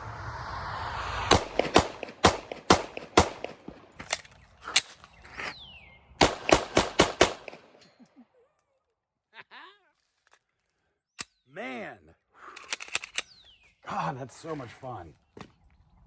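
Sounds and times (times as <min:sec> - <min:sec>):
pistol shots: 0:01.3 - 0:04.1, 0:06.2 - 0:07.8.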